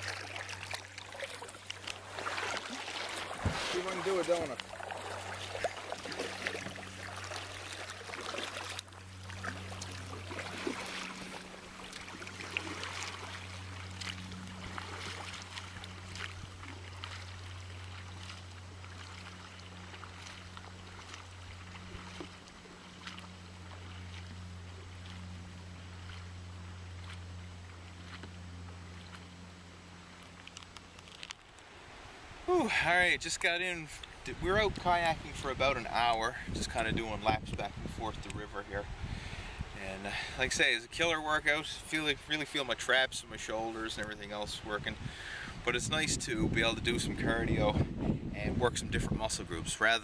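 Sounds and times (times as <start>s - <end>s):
water trickling off paddle: 0.0s - 31.8s
paddle splashing in water: 0.0s - 32.6s
steady low hum: 0.0s - 42.3s.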